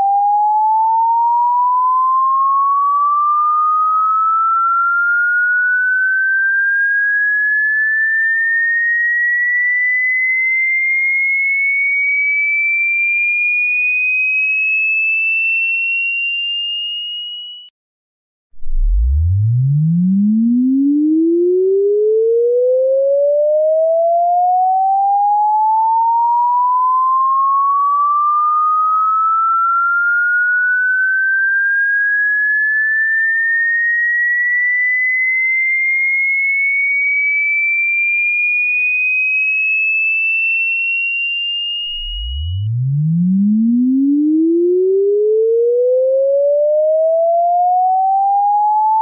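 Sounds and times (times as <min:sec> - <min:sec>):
rising sine-wave tone sweep: 0:18.5 - 0:33.6, 0:41.8 - 0:49.0.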